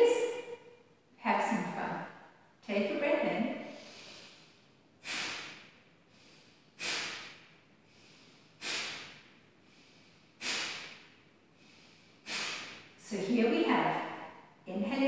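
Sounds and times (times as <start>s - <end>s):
forceful nasal exhalations: 3.6s - 13.0s
quiet inhalations: 3.6s - 13.0s.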